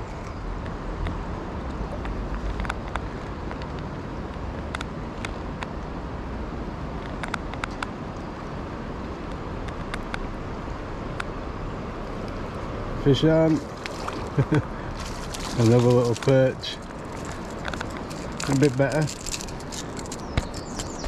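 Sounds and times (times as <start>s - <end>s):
water rushing over a weir: 12.5s - 21.0s.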